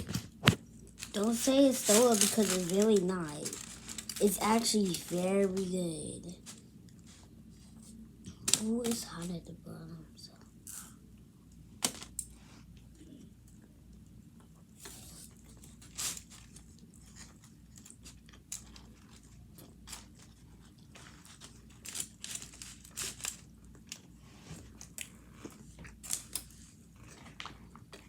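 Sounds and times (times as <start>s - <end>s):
person crunching and chewing food: 0.7s - 5.6s, 15.2s - 28.0s.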